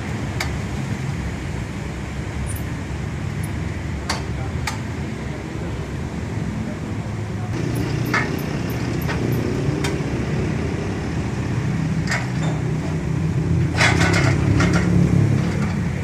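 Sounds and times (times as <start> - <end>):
metal clinks and knocks: 2.4 - 2.8, 7.6 - 9.5.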